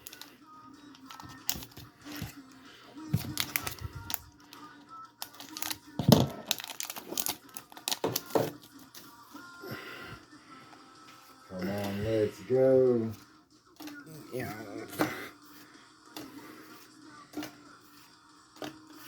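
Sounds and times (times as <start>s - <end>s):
soft background music: 0.0s - 19.0s
foil wrapper tearing and crinkling: 1.0s - 1.9s, 3.2s - 4.5s, 5.2s - 8.7s.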